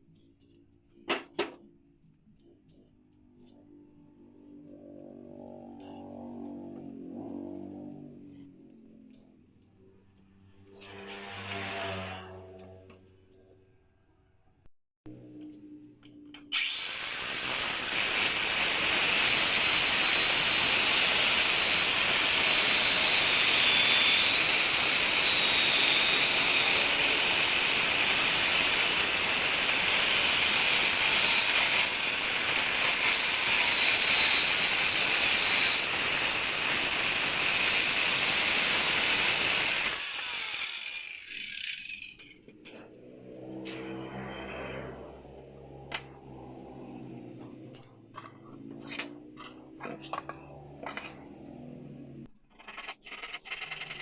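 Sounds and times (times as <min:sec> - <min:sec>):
power tool whining on wood: 0:16.4 - 0:52.3.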